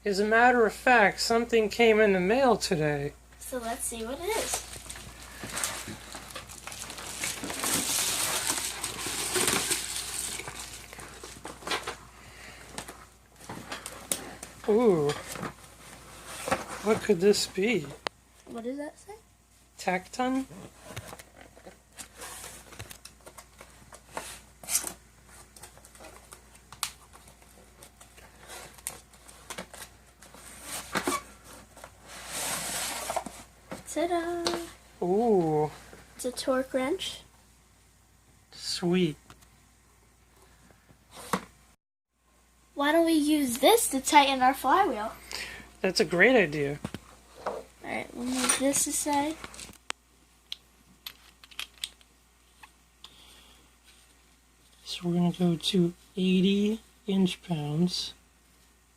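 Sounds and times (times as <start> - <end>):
packaging crinkling and rustling: 4.0 - 12.0, 48.2 - 49.9, 51.0 - 52.7.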